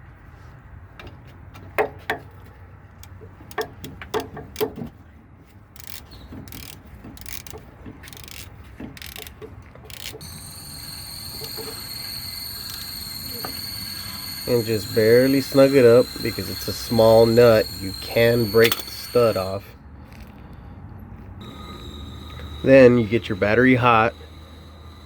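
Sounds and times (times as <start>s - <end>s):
ratchet wrench clicking: 5.8s - 19.6s.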